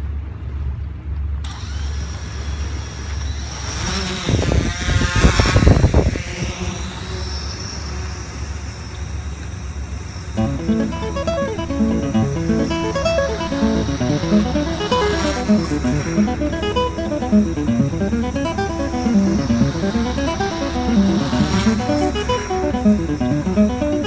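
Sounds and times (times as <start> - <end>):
drone motors humming and whining: 1.5 - 24.0
guitar music: 10.4 - 24.0.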